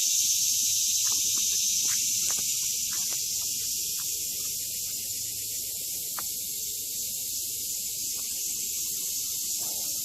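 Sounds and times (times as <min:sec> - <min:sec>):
high-pitched outdoor hiss: 0:00.0 - 0:10.0.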